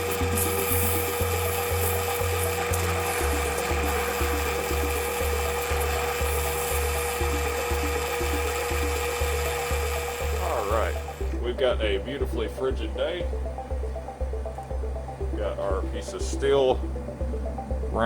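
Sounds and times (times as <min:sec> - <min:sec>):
power tool grinding steel: 0:00.0 - 0:11.3
background music with bass pulse: 0:00.0 - 0:18.0.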